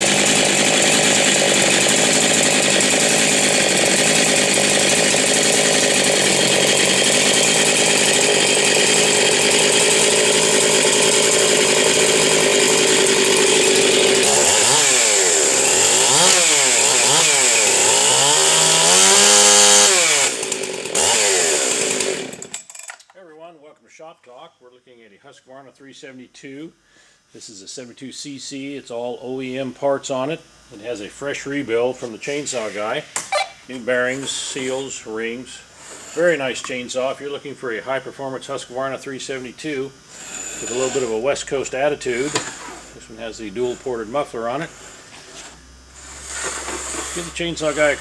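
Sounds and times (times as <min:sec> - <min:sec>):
chainsaw running at high revs: 0:00.0 - 0:23.0, 0:33.6 - 0:48.0.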